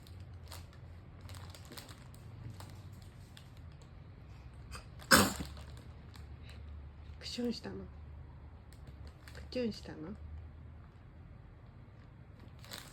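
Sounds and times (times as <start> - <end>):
baby wipes packet crinkling: 0.0 - 4.0, 5.0 - 6.7, 12.3 - 12.9
baby sneezing: 4.7 - 5.6.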